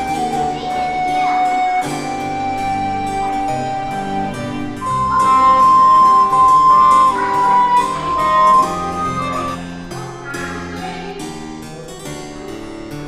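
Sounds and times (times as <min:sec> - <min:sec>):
instrumental background music: 0:00.0 - 0:12.5.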